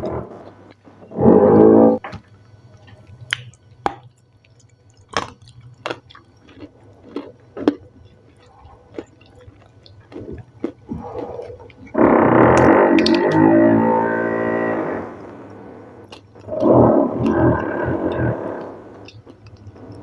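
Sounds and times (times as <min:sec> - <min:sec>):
chewing crunchy salad: 0:02.7 - 0:12.0, 0:16.0 - 0:20.0
wet mouth clicks: 0:03.1 - 0:12.0, 0:12.6 - 0:13.3, 0:16.1 - 0:20.0.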